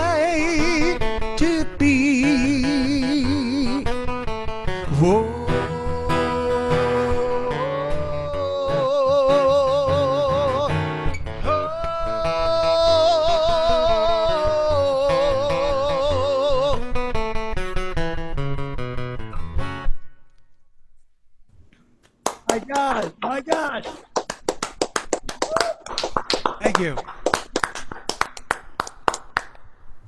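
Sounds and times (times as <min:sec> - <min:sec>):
man singing with vibrato: 0:00.0 - 0:17.2
acoustic guitar strumming: 0:00.0 - 0:20.4.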